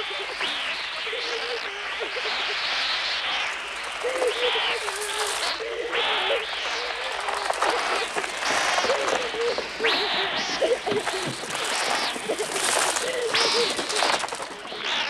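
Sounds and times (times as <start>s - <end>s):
crows shrieking: 0.0s - 15.0s
flapping wings: 2.2s - 15.0s
children screaming: 3.2s - 15.0s.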